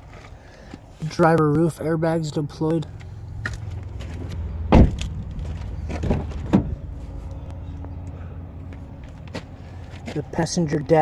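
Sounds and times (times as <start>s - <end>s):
steady low rumble: 2.4s - 11.0s
knocks and clunks in car cabin: 4.7s - 6.9s.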